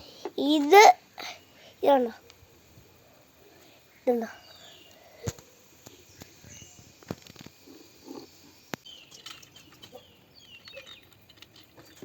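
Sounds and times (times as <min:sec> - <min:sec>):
birds chirping: 0:03.1 - 0:12.0
objects clicking and tapping: 0:08.7 - 0:12.0.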